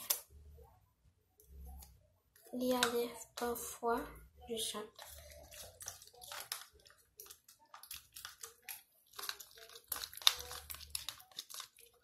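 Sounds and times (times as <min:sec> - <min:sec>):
slime crackling and squelching: 0:04.6 - 0:12.0.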